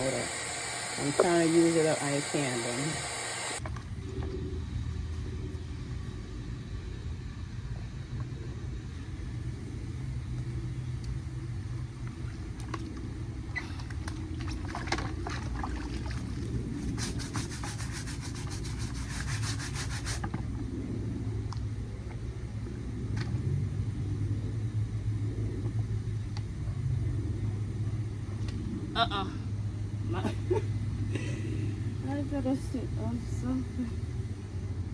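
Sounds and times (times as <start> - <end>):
steady low hum: 0.0 - 34.9
brush scrubbing shoe: 16.2 - 20.4.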